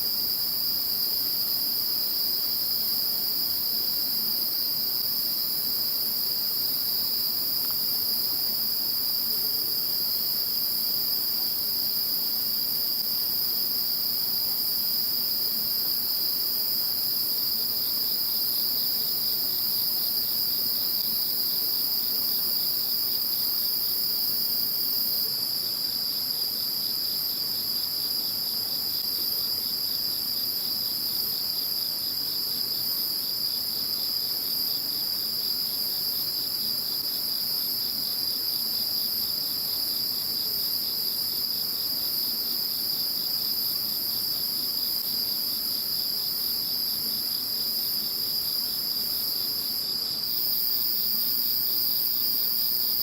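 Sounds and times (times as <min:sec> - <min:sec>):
insects trilling: 0:49.6 - 0:53.0.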